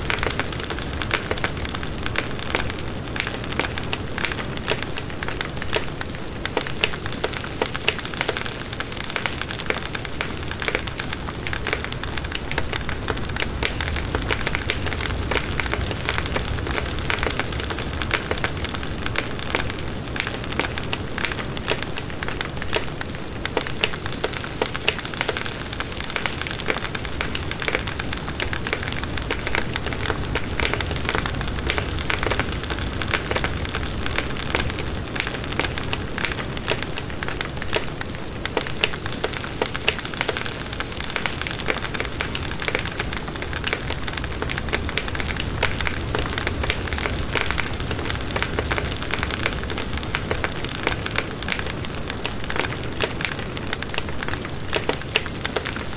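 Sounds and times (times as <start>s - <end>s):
bonfire hissing: 0.0s - 55.9s
burning wood crackling and popping: 0.0s - 55.9s.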